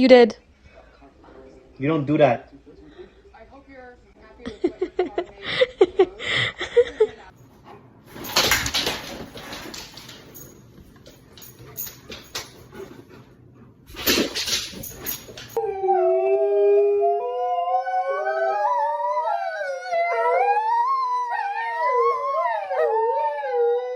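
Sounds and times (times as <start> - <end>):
dogs howling in chorus: 15.6 - 23.9.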